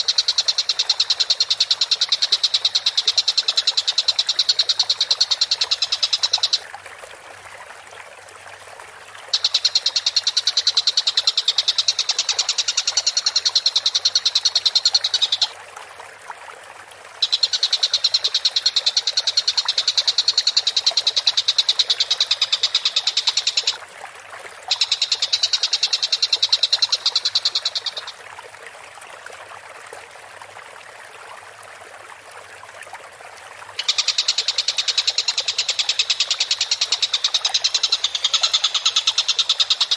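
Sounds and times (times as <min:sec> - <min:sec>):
kingfisher high-pitched rattling trills: 0:33.8 - 0:39.9.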